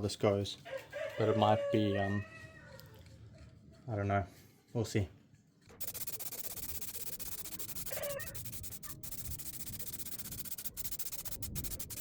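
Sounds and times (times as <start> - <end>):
aerosol spray can hissing: 5.8 - 12.0.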